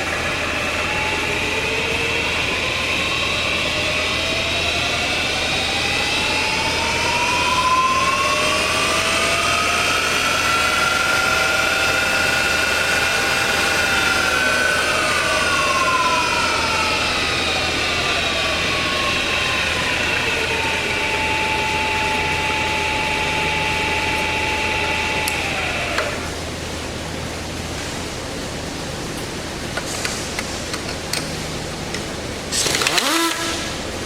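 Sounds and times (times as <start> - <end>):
milling machine spindle whine: 0.0 - 34.0.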